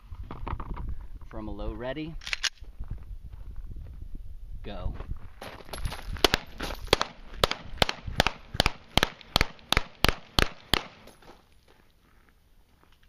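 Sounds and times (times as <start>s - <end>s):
pistol shots fired rapidly: 6.2s - 11.0s.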